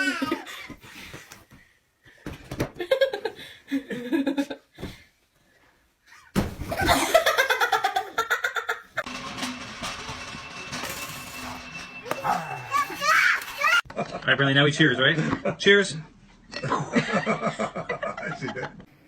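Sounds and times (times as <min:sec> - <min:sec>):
person laughing: 0:06.7 - 0:08.9.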